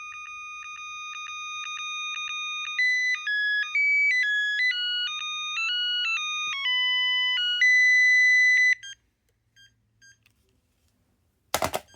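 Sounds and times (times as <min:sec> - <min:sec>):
cordless phone ringtone melody: 0:00.0 - 0:09.0.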